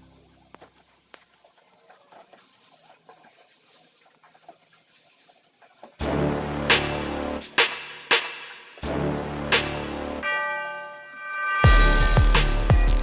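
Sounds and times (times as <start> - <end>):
background music: 6.0 - 13.0
electronic music with a beat: 6.1 - 13.0.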